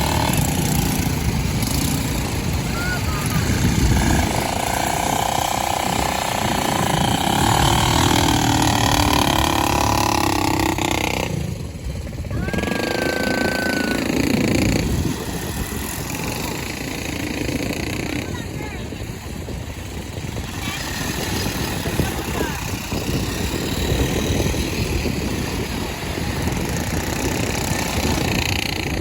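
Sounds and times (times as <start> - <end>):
atv engine rumbling: 0.0 - 29.0.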